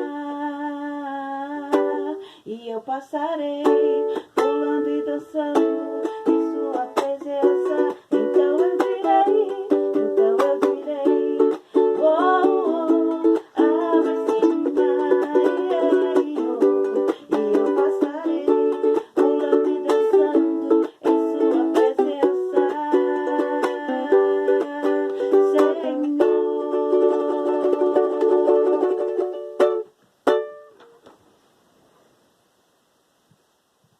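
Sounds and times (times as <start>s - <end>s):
ukulele strumming: 1.5s - 2.2s, 3.4s - 31.2s.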